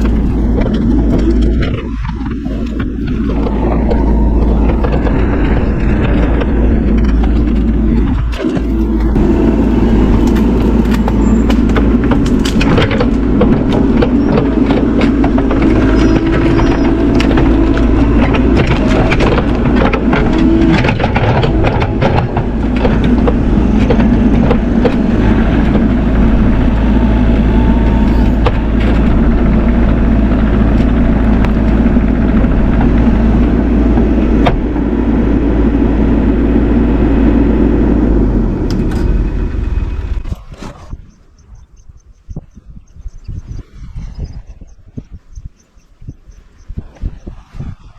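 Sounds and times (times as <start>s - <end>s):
sharp cracks and crunches: 0.0s - 26.8s
diesel engine running under load: 0.0s - 47.8s.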